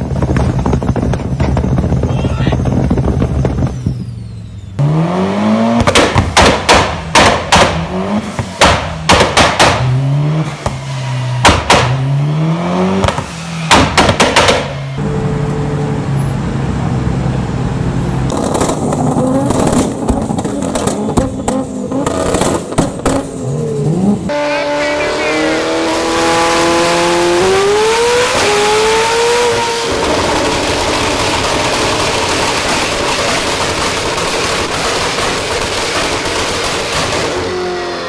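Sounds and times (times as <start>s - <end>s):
exhaust pops and bangs: 0.0s - 4.0s, 5.7s - 12.3s, 12.9s - 15.0s, 18.3s - 23.8s, 29.2s - 37.7s
car engine revving: 0.0s - 38.0s.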